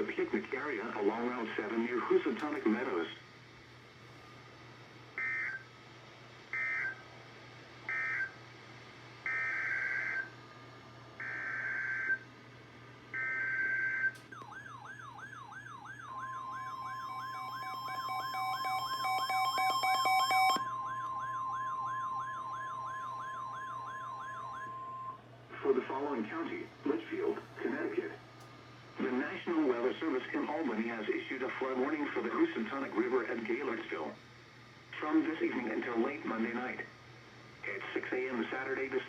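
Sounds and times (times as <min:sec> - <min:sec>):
warbling siren-like alert tone: 0:13.2 - 0:25.2
steady attention tone: 0:14.3 - 0:25.9
screeching data bursts: 0:16.1 - 0:25.2.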